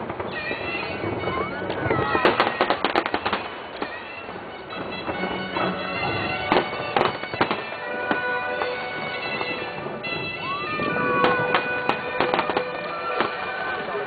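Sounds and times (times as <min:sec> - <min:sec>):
firework shells bursting: 0:00.0 - 0:14.0.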